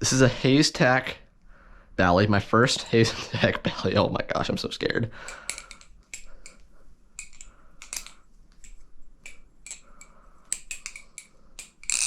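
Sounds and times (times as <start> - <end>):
butterfly knife metal clicks: 5.3 - 6.6, 7.2 - 12.0.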